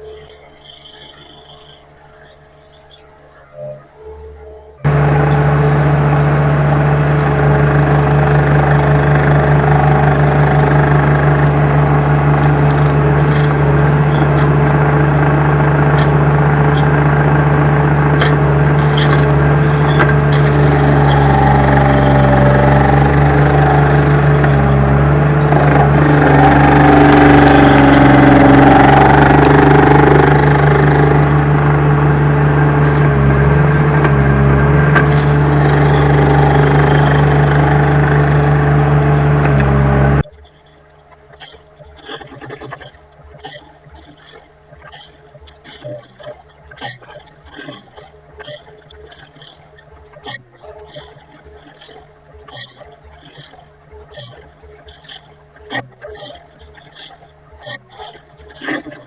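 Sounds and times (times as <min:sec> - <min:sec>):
skid steer engine running: 0:00.0 - 0:59.0
stump grinder grinding: 0:04.9 - 0:40.3.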